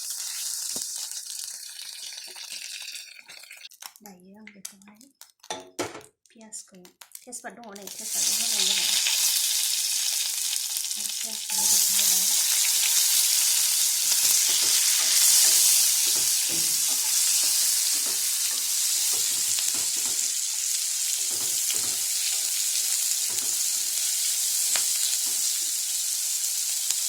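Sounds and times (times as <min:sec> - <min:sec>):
onion frying in hot oil: 0:00.0 - 0:04.0, 0:07.0 - 0:27.0
utensil scraping in pan: 0:11.5 - 0:26.0.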